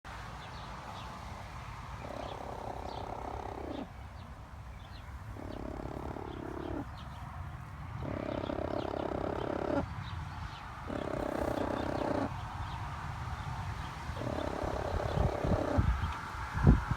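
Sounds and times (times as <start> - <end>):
hen drawn-out call: 2.0 - 3.9, 5.4 - 6.9, 8.0 - 9.9, 10.8 - 12.3, 14.2 - 15.9.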